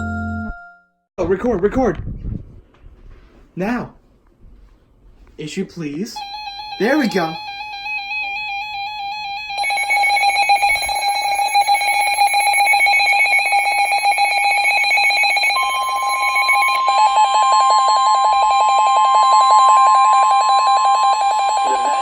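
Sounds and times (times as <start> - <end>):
steady weather radio warning tone: 6.1 - 7.8, 21.2 - 22.0.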